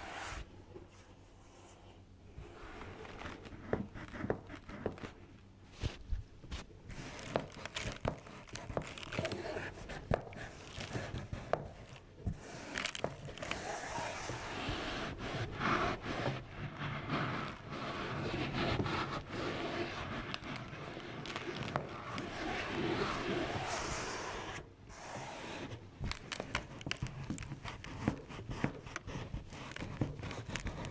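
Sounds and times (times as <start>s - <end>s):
rustling and crinkling: 0.0s - 30.9s.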